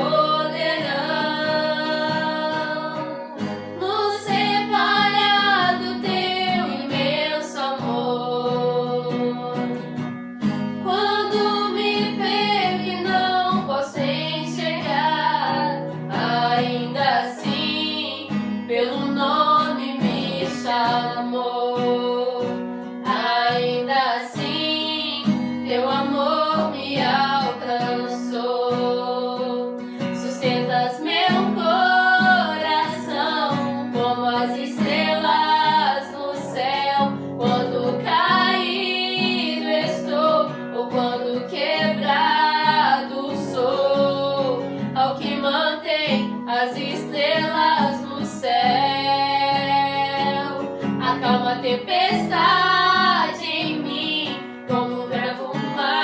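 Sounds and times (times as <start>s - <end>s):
woman singing: 0.0s - 10.0s, 10.8s - 56.0s
acoustic guitar: 0.0s - 56.0s.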